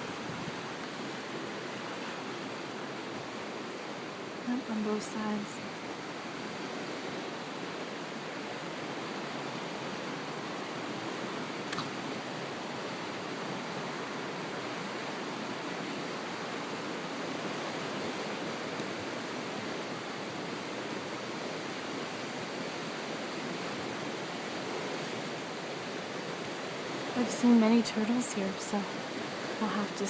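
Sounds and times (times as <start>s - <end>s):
river water rushing: 0.0s - 30.0s.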